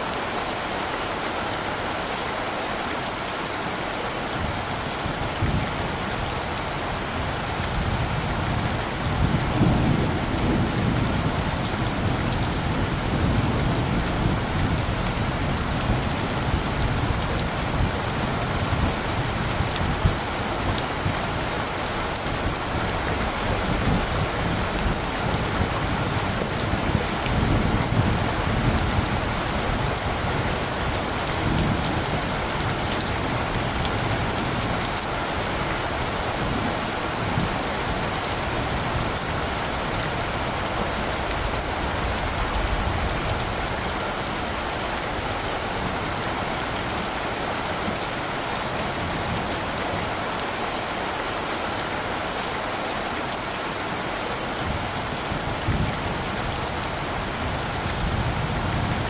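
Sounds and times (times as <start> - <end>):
steady rain falling: 0.0 - 59.0
distant thunder rumble: 4.4 - 47.2.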